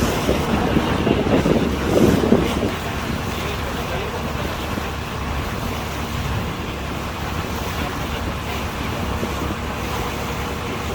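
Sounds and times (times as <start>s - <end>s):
boat engine humming: 0.0s - 10.9s
water rushing: 0.0s - 10.9s
wind: 0.0s - 10.9s.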